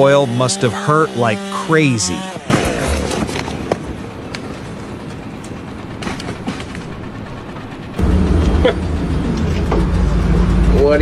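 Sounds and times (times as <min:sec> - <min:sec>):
rattling machinery with clanks: 0:02.6 - 0:11.0
heavy diesel engine running: 0:02.8 - 0:11.0.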